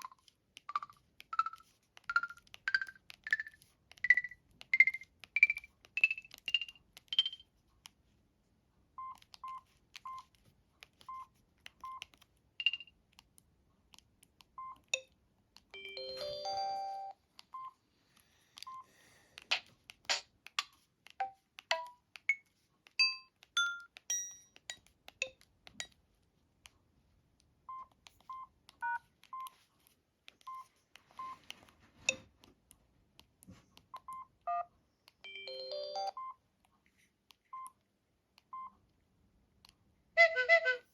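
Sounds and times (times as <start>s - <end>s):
phone beeps: 15.8s - 17.8s, 30.5s - 31.4s, 34.0s - 36.4s.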